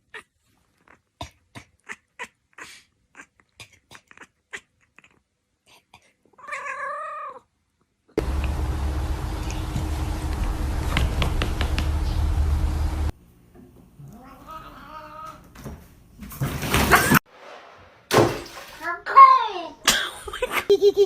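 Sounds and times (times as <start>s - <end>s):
cat meowing: 6.4s - 7.4s, 14.0s - 15.4s.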